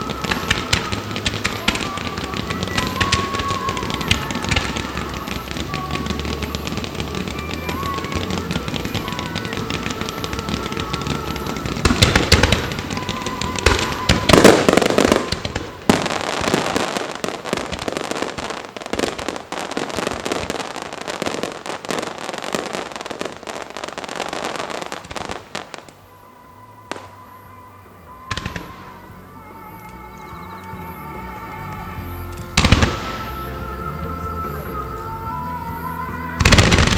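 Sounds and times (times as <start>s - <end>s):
music: 0.0s - 18.6s, 24.1s - 36.9s
single firework bangs: 0.0s - 25.9s, 32.0s - 34.0s
fireworks bursts and crackling: 0.0s - 36.9s.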